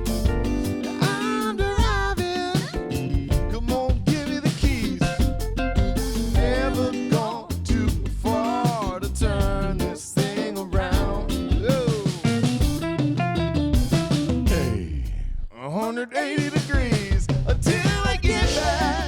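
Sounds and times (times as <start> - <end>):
guitar playing: 0.0 - 14.7, 18.3 - 19.0
drum kit: 0.0 - 15.0, 15.8 - 19.0.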